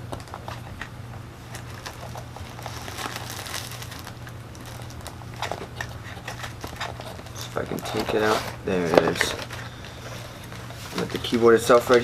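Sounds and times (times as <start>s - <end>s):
box packaging rustling: 0.0s - 12.0s
small clicks and scrapes: 5.4s - 11.3s.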